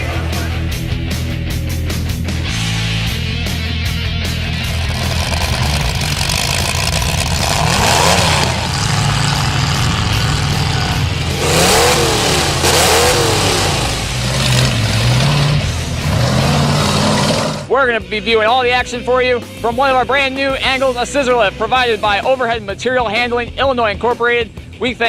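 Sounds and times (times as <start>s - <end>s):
car engines revving: 3.5s - 17.7s.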